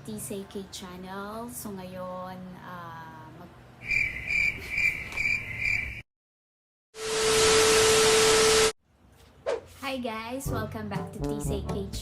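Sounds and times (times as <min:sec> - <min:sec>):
cricket chirping: 0:03.8 - 0:06.0.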